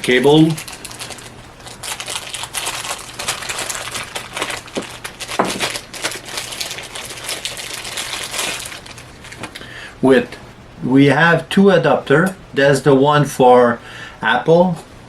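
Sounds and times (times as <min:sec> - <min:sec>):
packaging crinkling and rustling: 0:00.0 - 0:09.6.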